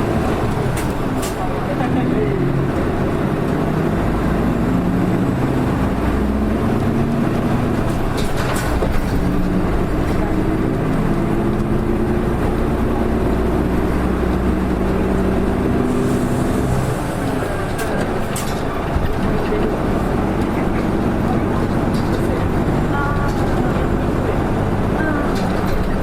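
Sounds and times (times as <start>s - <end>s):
bus diesel engine accelerating: 0.0s - 26.0s.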